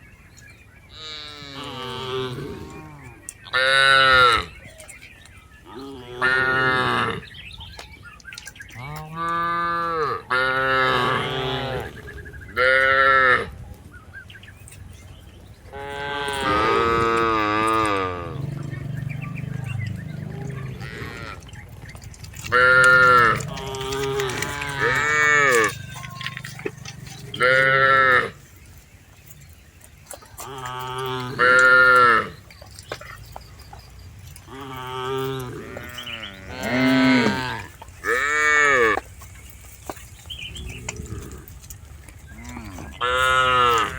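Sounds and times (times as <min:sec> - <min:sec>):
cattle mooing: 0:01.0 - 0:04.5, 0:05.7 - 0:07.3, 0:08.8 - 0:12.0, 0:15.7 - 0:21.6, 0:22.3 - 0:28.4, 0:30.4 - 0:32.4, 0:34.4 - 0:39.0, 0:40.5 - 0:43.9.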